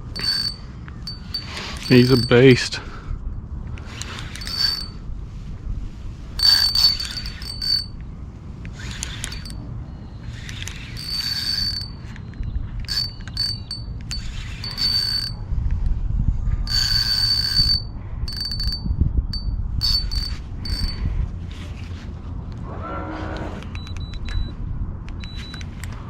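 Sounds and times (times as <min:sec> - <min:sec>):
fishing reel whirring: 0:00.0 - 0:02.5, 0:03.8 - 0:05.0, 0:06.4 - 0:08.0, 0:08.8 - 0:09.6, 0:10.3 - 0:12.2, 0:12.9 - 0:15.4, 0:16.7 - 0:21.0.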